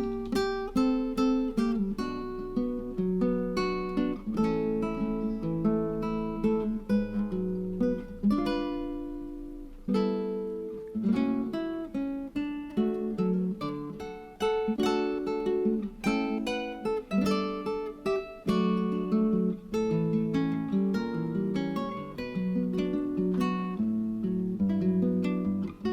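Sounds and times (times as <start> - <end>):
acoustic guitar picking and strumming: 0.0 - 25.9.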